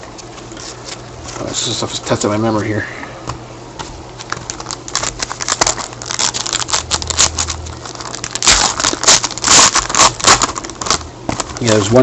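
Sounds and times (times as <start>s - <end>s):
card packaging crinkling: 4.2s - 12.0s.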